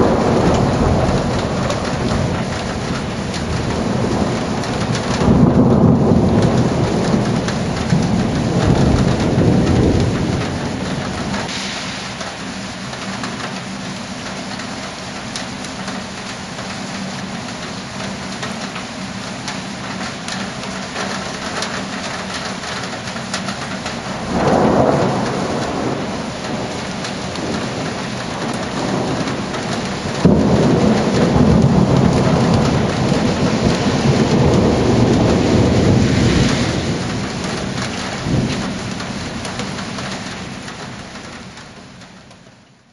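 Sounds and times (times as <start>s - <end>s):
thunder: 0.0s - 12.4s, 20.9s - 41.4s
heavy rain: 0.0s - 42.9s.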